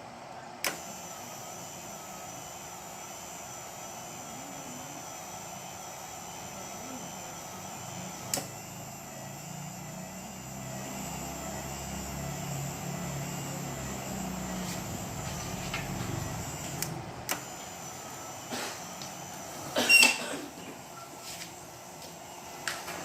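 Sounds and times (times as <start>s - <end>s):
small electric motor humming: 0.6s - 23.0s.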